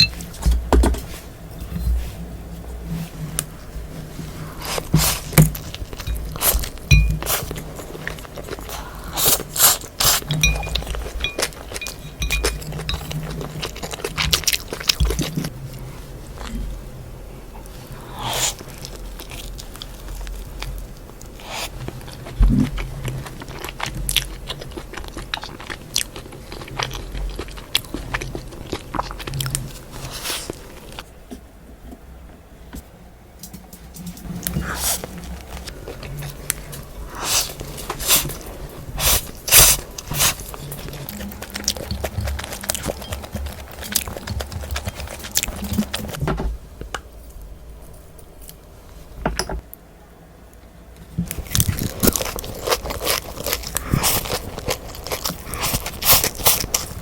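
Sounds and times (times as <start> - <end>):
chewing and wet mouth sounds: 4.5 - 15.6, 17.6 - 31.0, 34.0 - 46.2, 51.2 - 57.0.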